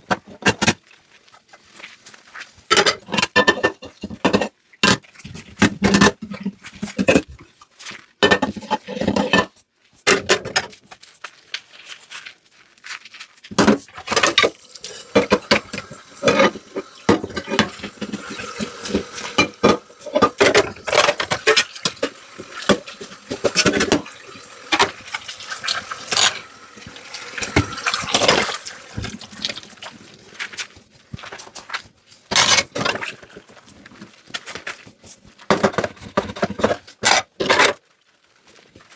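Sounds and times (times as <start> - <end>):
dishes clinking and knocking: 13.6 - 29.6
tap water running: 13.9 - 30.7.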